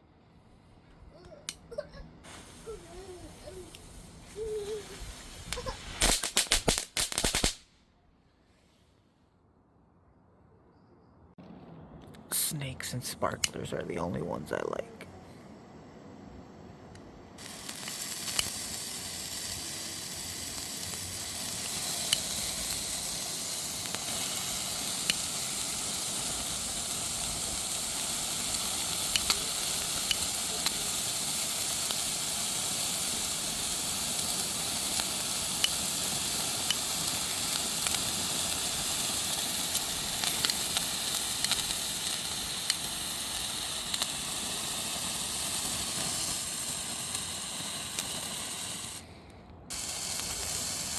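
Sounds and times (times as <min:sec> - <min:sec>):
firework hissing: 0:02.1 - 0:07.7, 0:12.3 - 0:14.0, 0:17.4 - 0:50.9
firework crackles: 0:02.2 - 0:07.8, 0:12.3 - 0:14.7, 0:17.4 - 0:49.1, 0:49.7 - 0:50.9.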